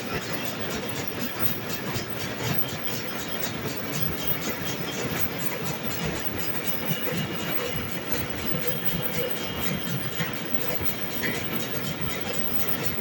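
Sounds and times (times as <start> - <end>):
laminating machine running: 0.0 - 13.0.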